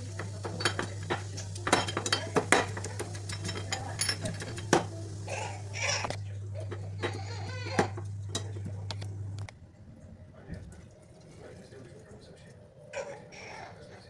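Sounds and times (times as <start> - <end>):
spoon and dishes clinking: 0.0 - 9.0.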